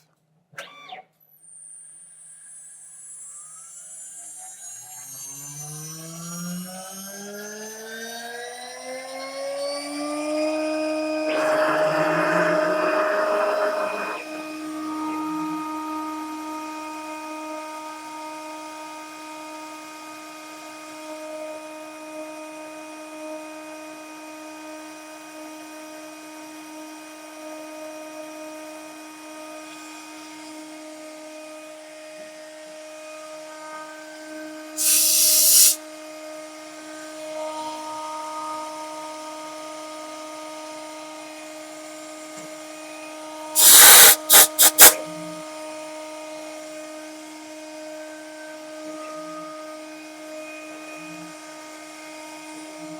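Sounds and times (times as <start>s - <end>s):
machine spindle whining: 10.3s - 16.1s
loud bursts of hiss: 11.3s - 14.3s, 34.8s - 35.8s, 43.6s - 45.0s.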